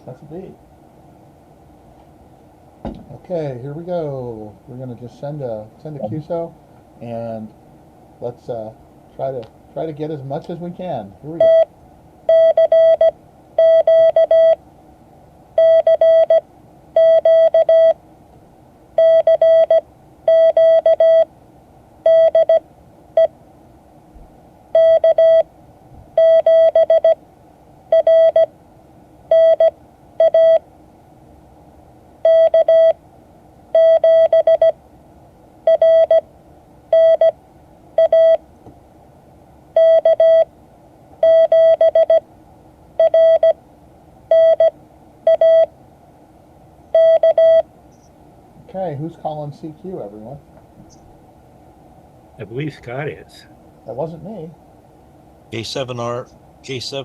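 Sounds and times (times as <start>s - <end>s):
morse code beeping: 17.0s - 18.0s, 19.0s - 21.2s, 24.8s - 25.4s, 27.9s - 28.5s, 32.3s - 32.9s, 33.8s - 34.7s, 35.7s - 36.2s, 38.0s - 38.4s, 41.2s - 42.2s, 43.0s - 43.6s, 44.3s - 44.7s, 45.3s - 45.7s, 47.0s - 47.6s.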